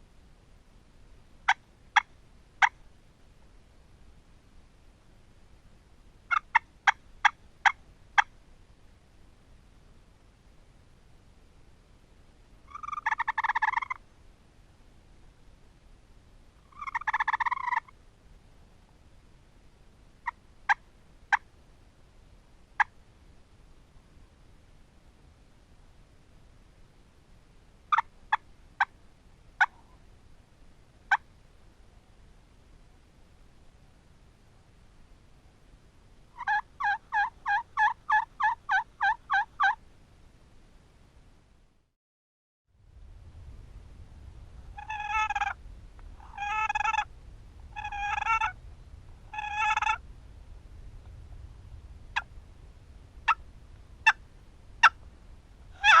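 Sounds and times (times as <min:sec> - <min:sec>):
turkey gobbling: 0:01.5 - 0:02.8, 0:06.3 - 0:08.3, 0:12.7 - 0:14.0, 0:16.7 - 0:17.9, 0:27.9 - 0:28.9, 0:29.6 - 0:30.0, 0:36.4 - 0:39.8, 0:44.7 - 0:45.6, 0:46.2 - 0:47.1, 0:47.8 - 0:48.6, 0:49.3 - 0:50.0, 0:54.8 - 0:55.0, 0:55.8 - 0:56.0
turkey clucking: 0:06.3 - 0:08.3, 0:12.7 - 0:14.0, 0:16.7 - 0:17.9, 0:36.4 - 0:39.8, 0:44.8 - 0:45.6, 0:46.2 - 0:47.1, 0:47.8 - 0:48.6, 0:49.3 - 0:50.0, 0:55.8 - 0:56.0.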